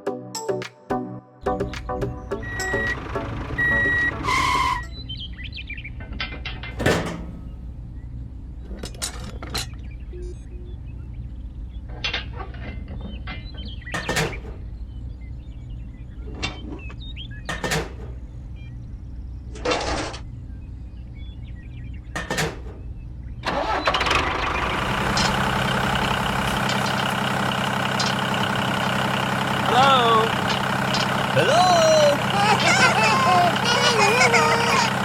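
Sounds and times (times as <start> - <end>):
small engine idling: 2.3 - 4.6, 23.4 - 35.0
louder engine running: 2.4 - 4.7, 23.9 - 35.0.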